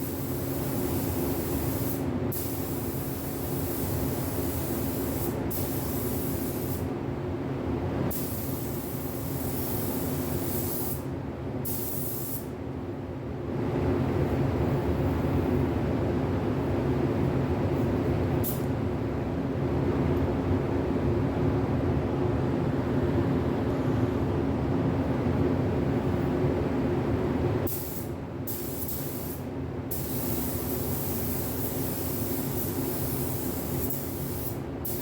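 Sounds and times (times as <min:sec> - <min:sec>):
spray gun hissing: 0:00.0 - 0:06.8, 0:27.7 - 0:35.0.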